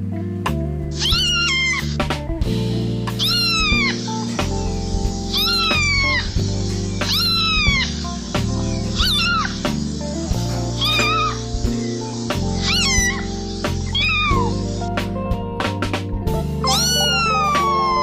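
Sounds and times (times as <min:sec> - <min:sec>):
background music: 0:00.0 - 0:18.0
cat meowing: 0:01.0 - 0:02.0, 0:03.2 - 0:04.0, 0:05.2 - 0:08.0, 0:08.6 - 0:09.7, 0:10.7 - 0:11.5, 0:12.5 - 0:14.7, 0:16.6 - 0:18.0.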